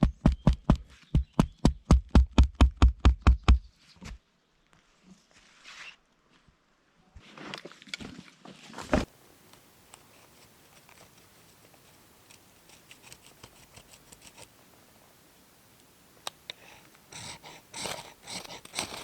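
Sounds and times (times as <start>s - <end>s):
faint steady hiss: 4.3s - 19.0s
rustling and handling noises: 7.2s - 14.6s, 16.9s - 19.0s.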